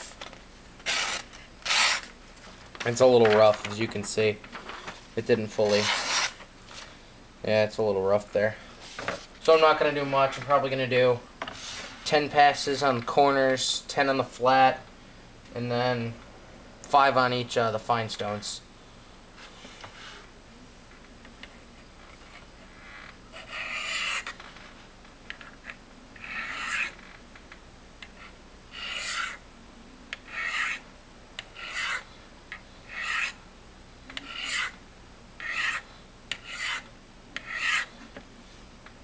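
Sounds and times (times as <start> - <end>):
knife blade scraping on ceramic stones: 26.2 - 27.0, 28.8 - 29.4, 31.6 - 32.0, 32.9 - 33.4, 34.2 - 34.7, 35.4 - 35.8, 36.4 - 36.8, 37.4 - 37.9.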